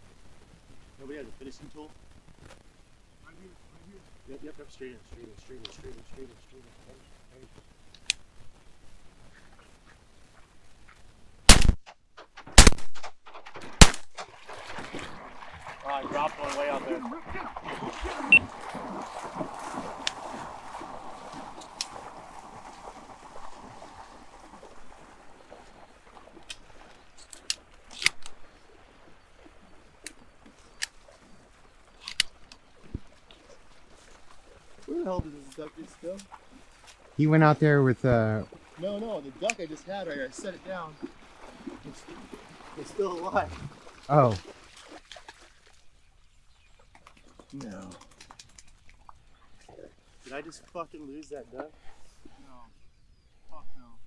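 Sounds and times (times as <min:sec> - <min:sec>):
shotgun shots with echo: 0:11.5 - 0:14.3.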